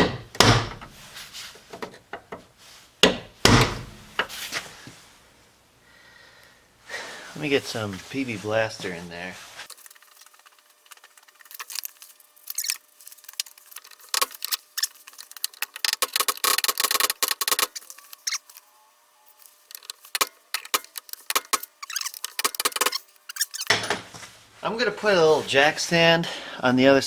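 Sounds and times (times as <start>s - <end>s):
clicks and rattles: 9.8s - 18.4s, 19.7s - 23.7s.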